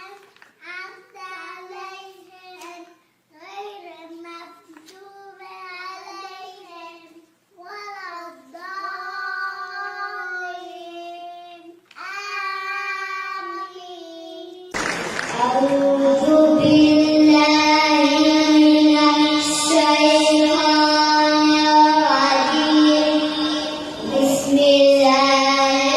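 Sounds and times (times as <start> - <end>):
child chanting melodically: 0.0 - 14.7, 15.3 - 25.9
recited voice holding long note: 18.1 - 25.9.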